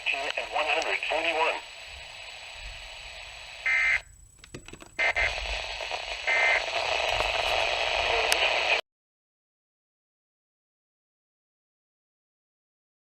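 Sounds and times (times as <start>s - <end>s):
buzzy digital data bursts: 0.0s - 4.4s, 5.0s - 8.8s
radio static hiss: 0.0s - 8.8s.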